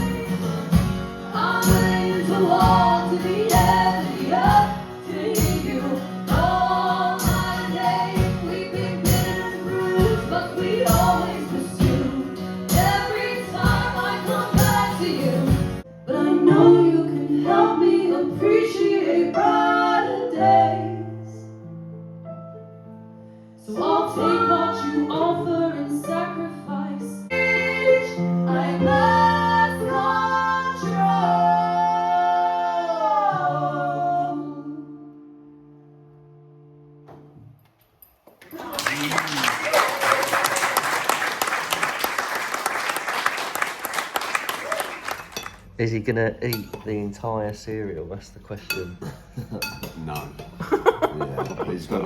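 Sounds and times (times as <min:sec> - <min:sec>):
song with singing over a beat: 0:00.0 - 0:15.8.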